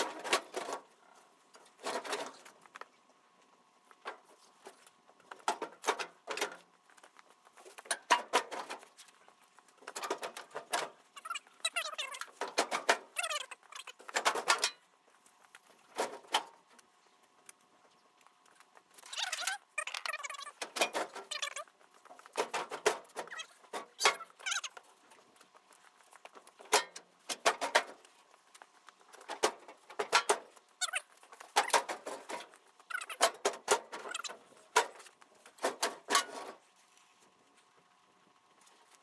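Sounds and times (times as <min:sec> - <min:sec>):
metal parts scraping and clattering: 0:29.1 - 0:36.6.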